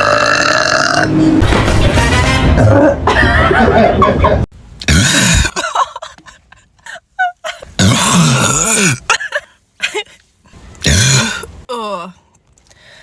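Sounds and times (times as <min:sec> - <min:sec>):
woman burping: 0:00.0 - 0:01.1, 0:04.8 - 0:05.8, 0:07.8 - 0:09.2, 0:10.8 - 0:11.5
small coughs and throat sounds: 0:04.8 - 0:05.8.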